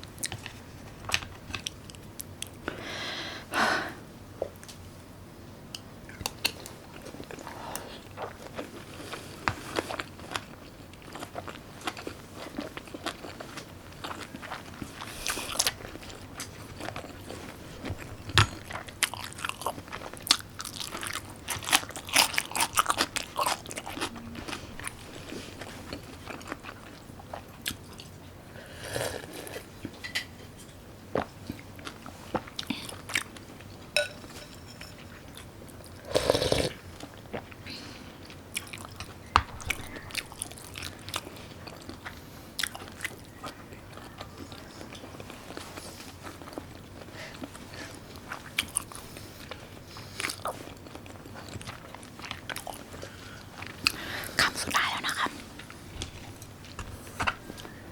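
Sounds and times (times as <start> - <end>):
person chewing and crunching: 6.2 - 30.0, 31.1 - 33.5, 38.2 - 56.8.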